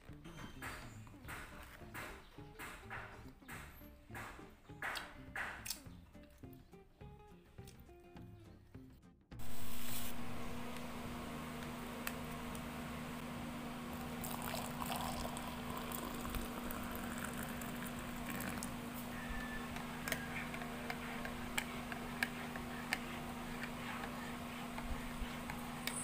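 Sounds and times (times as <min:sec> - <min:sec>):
cooking hiss: 0:09.4 - 0:26.0
low hum: 0:09.4 - 0:26.0.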